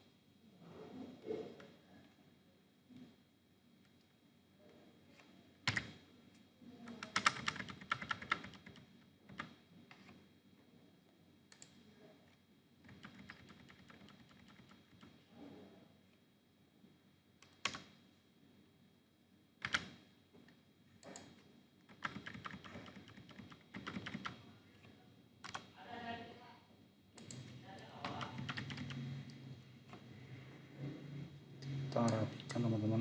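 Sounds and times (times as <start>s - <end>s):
computer keyboard typing: 5.6s - 6.0s, 6.9s - 10.1s, 12.8s - 15.2s, 17.4s - 17.9s, 19.6s - 19.9s, 21.9s - 24.4s, 25.4s - 25.7s, 27.2s - 29.4s.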